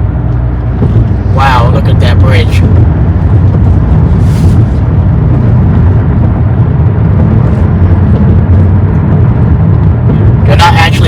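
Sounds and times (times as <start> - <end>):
car driving rumble: 0.0 - 11.0.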